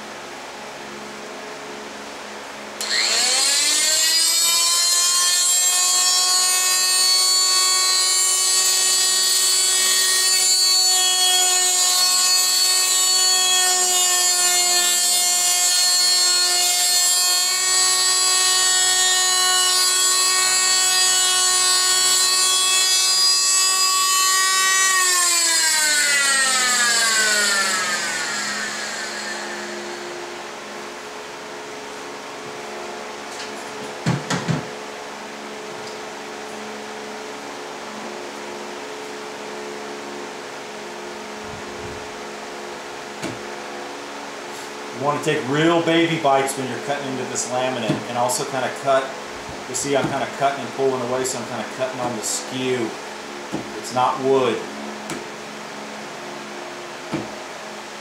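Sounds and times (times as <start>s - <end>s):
power tool motor whirring: 2.8s - 31.0s.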